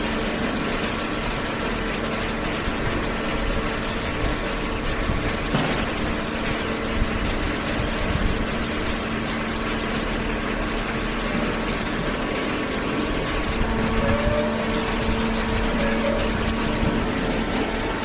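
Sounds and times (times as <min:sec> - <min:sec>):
machine humming: 0:00.0 - 0:18.0.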